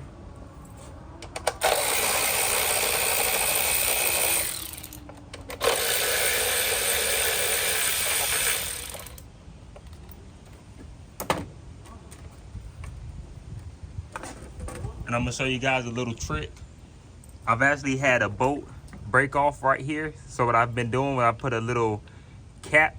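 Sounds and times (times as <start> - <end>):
power tool spinning out bolts: 1.6 - 9.2.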